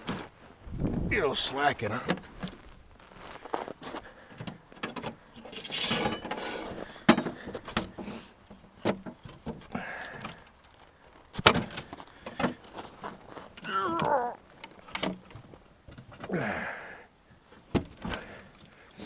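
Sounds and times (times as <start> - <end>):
rustling: 2.2 - 4.3, 10.3 - 16.2
hand tools and metal parts clinking: 3.2 - 16.3.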